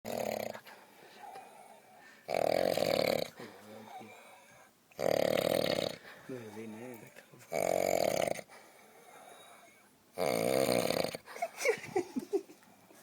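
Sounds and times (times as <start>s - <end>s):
person snoring loudly: 0.1s - 0.6s, 2.3s - 3.4s, 5.0s - 6.0s, 7.5s - 8.5s, 10.2s - 11.2s.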